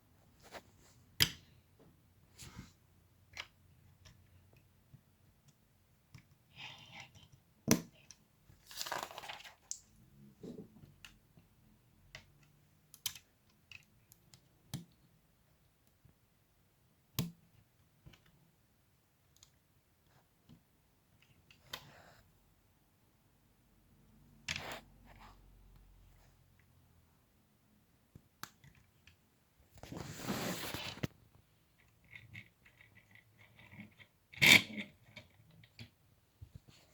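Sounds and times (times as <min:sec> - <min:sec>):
rustling: 0:08.6 - 0:09.8, 0:29.7 - 0:31.2.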